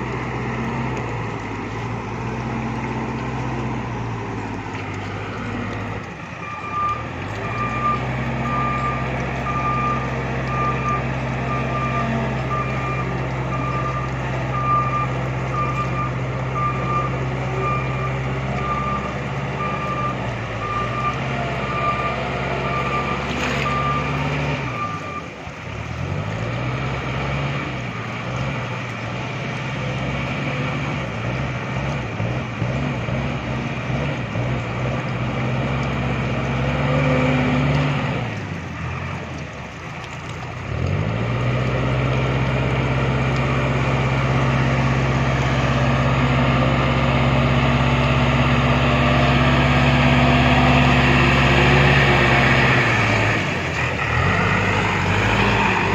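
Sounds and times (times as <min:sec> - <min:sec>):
diesel engine running: 0:00.0 - 0:55.9
reversing alarm beeping: 0:06.4 - 0:25.3.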